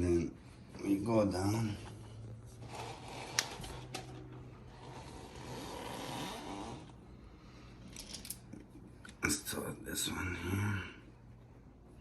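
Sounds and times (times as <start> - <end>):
low steady hum: 0.0 - 12.0
rustling and handling parts: 7.8 - 9.1.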